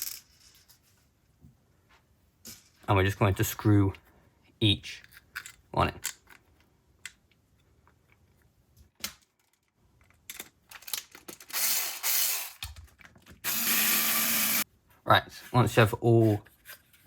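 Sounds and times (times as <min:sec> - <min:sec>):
screwdriver driving screw: 0:11.5 - 0:12.7, 0:13.4 - 0:14.6.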